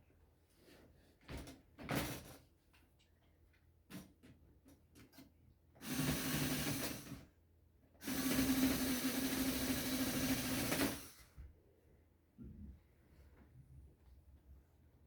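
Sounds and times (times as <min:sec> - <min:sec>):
power drill motor whine: 0:05.8 - 0:07.2, 0:08.0 - 0:11.2.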